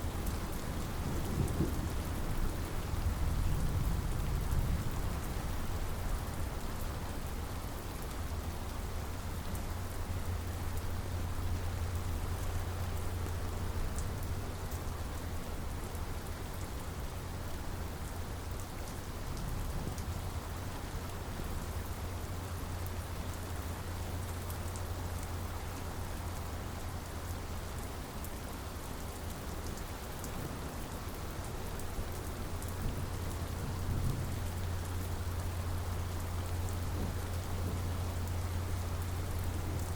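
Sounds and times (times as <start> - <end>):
raindrops ticking: 9.5 - 16.4, 29.0 - 39.9
heavy rain hissing: 30.4 - 39.9.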